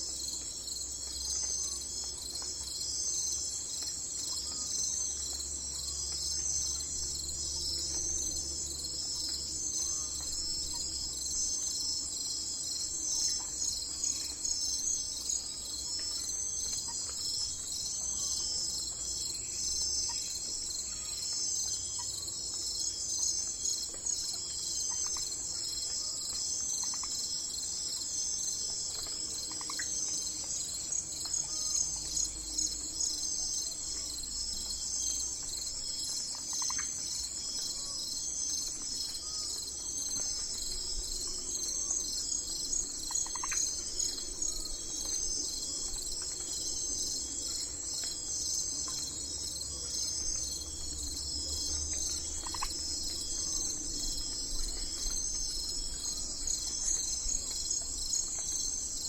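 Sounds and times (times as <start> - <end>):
insects trilling: 0.1 - 59.0.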